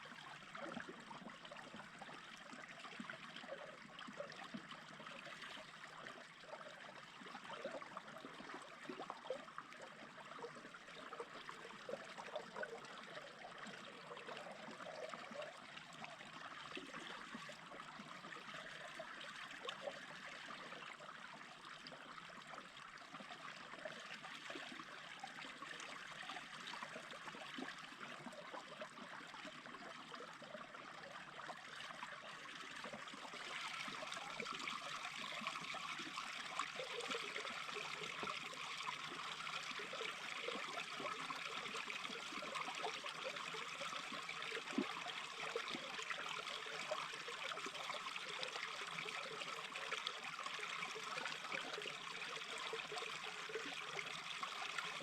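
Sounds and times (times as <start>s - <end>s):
stream babbling over stones: 22.0s - 55.0s.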